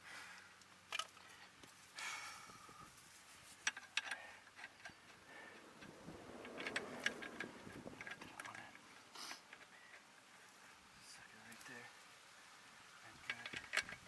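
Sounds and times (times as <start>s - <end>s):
short rustle: 1.1s - 12.0s
faint clicks and knocks: 2.5s - 10.3s, 13.2s - 14.0s.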